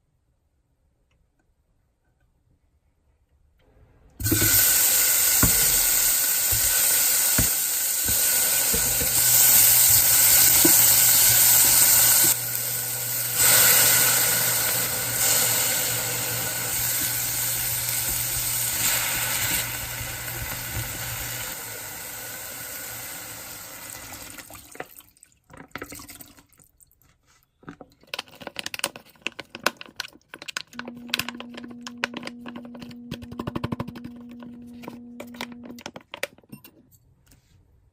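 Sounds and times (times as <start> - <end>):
tap water running into sink: 4.2 - 12.4.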